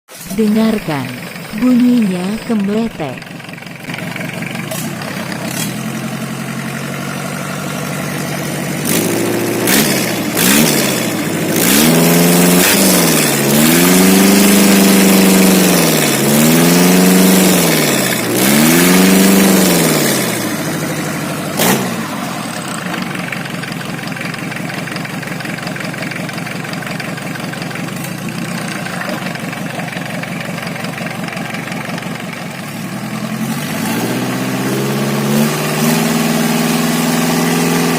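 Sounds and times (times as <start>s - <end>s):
clattering truck engine revving: 0.1s - 37.9s.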